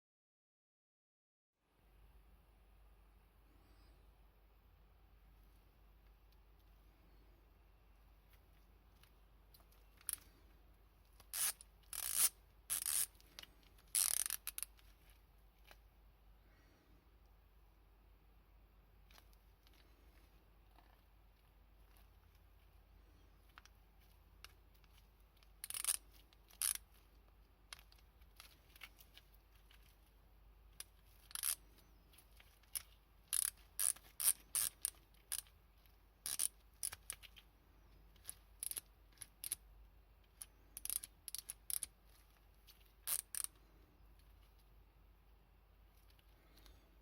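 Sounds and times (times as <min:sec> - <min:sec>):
ratchet metallic clicks: 0:33.3 - 0:35.5.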